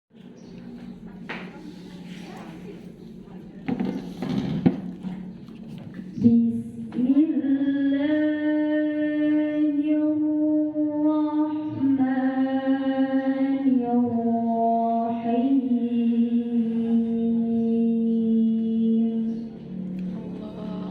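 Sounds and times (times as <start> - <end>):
girl reciting melodically: 6.0 - 20.9.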